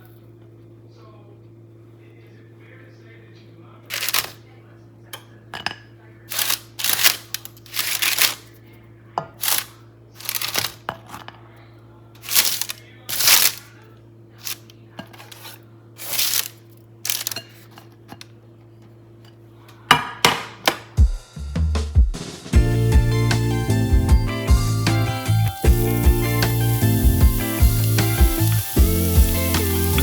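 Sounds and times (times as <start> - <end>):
low electrical hum: 0.0 - 21.0, 22.6 - 30.0
household handling noise: 3.9 - 4.4, 6.3 - 8.5, 9.4 - 11.3, 12.2 - 13.7, 14.4 - 18.3, 24.4 - 30.0.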